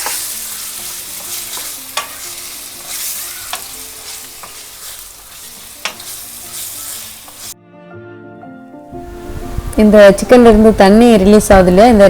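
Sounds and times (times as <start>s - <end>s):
utensil clicking against pan: 0.0s - 7.5s
chicken sizzling in oil: 0.0s - 7.6s.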